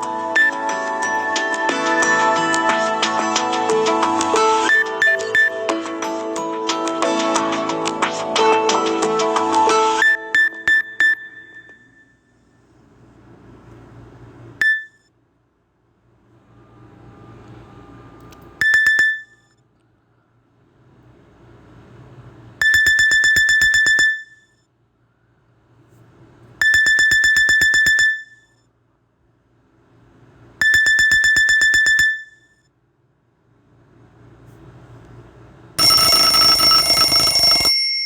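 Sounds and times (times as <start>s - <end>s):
electronic ringtone beeping: 0.0s - 6.1s, 9.7s - 12.3s, 35.8s - 38.0s.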